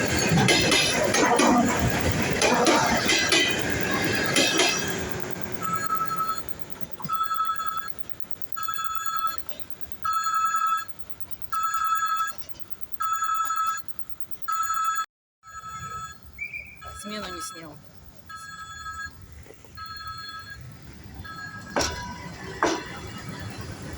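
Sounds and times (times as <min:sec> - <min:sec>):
electric train running: 0:00.0 - 0:07.1, 0:19.8 - 0:23.9
high electronic ringing signal: 0:04.1 - 0:19.2, 0:19.8 - 0:22.8.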